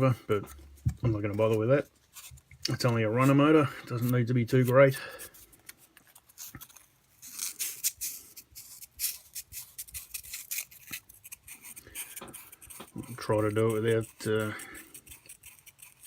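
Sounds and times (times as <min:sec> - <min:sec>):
sandpaper scratching on metal: 0:12.5 - 0:16.0.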